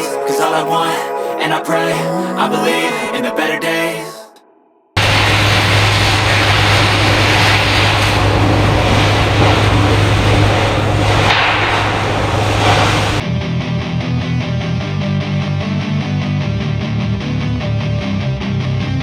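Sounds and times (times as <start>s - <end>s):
arc welding crackling hiss: 5.0s - 13.2s
constant low hum: 5.0s - 13.2s.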